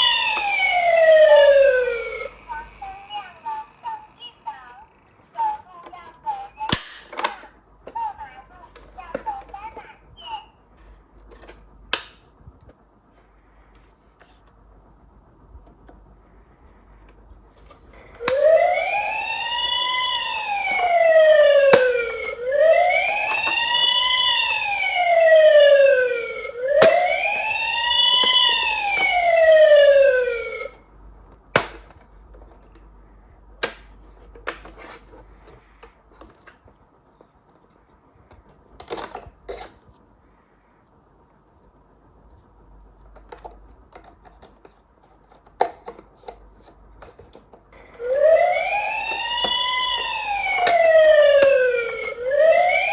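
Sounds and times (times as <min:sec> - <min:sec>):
toy siren wailing: 0:00.0 - 0:04.9, 0:18.0 - 0:30.8, 0:47.8 - 0:52.9.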